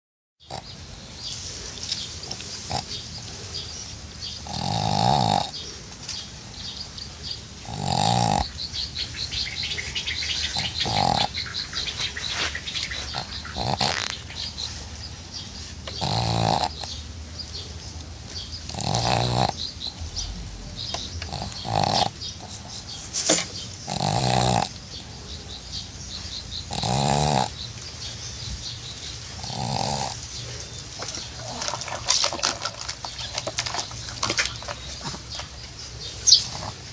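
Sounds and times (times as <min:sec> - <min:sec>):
dog snoring: 0:02.2 - 0:03.0, 0:04.3 - 0:05.6, 0:07.6 - 0:08.6, 0:10.4 - 0:12.0, 0:12.9 - 0:14.6, 0:15.8 - 0:17.0, 0:18.6 - 0:22.9, 0:23.8 - 0:25.1, 0:26.7 - 0:27.6, 0:29.4 - 0:30.6.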